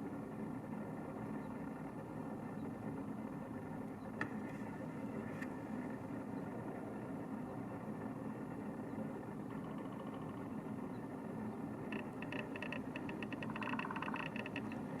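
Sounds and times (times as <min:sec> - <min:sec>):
traffic hum: 0:00.0 - 0:15.0
woodpecker drumming: 0:09.5 - 0:10.8, 0:11.6 - 0:15.0.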